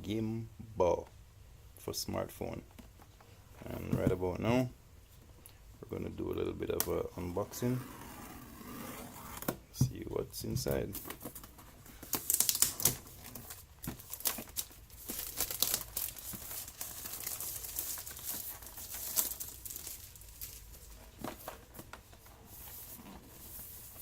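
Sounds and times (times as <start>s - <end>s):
plastic packaging crinkling and tearing: 11.0s - 21.8s.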